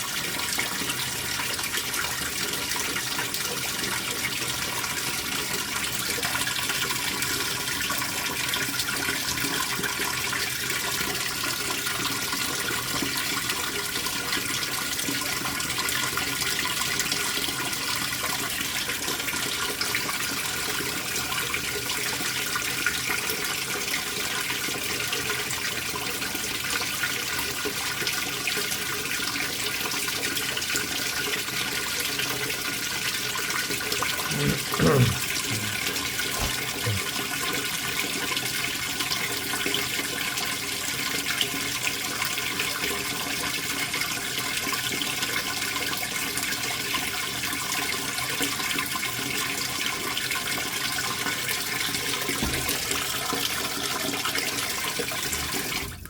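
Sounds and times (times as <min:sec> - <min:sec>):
water running into washer tub: 0:00.0 - 0:56.0.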